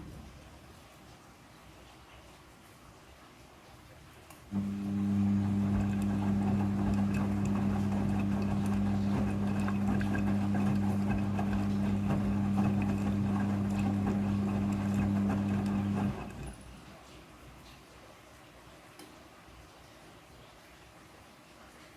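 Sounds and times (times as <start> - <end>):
rattly watery churn: 4.5 - 17.1
washing machine hum: 4.5 - 17.7.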